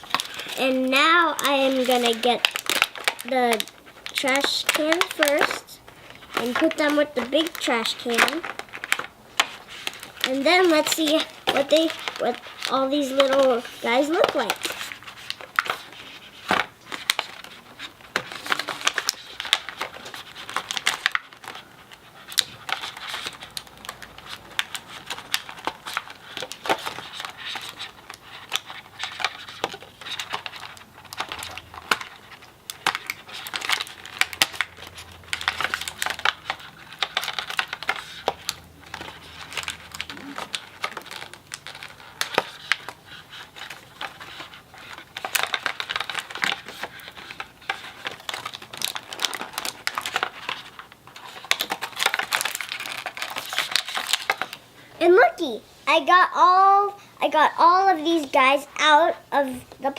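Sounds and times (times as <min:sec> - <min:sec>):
plastic packaging crinkling and tearing: 0:00.0 - 0:55.3.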